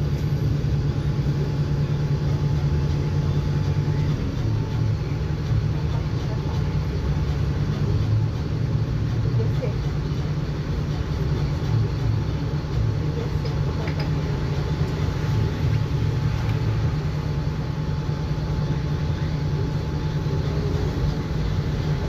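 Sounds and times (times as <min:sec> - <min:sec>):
bus engine droning: 0:00.0 - 0:22.0
road and body noise: 0:00.0 - 0:22.0.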